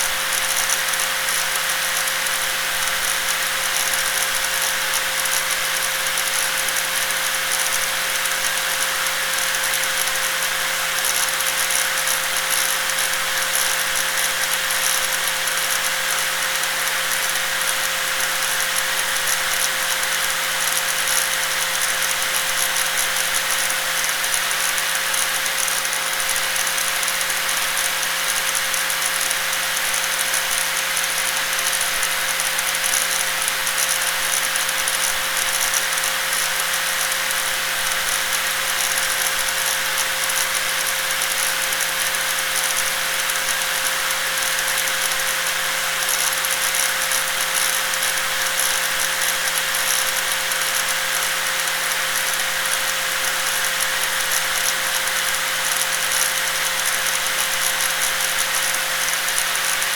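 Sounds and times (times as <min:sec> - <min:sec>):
angle grinder running: 0:13.6 - 0:59.9.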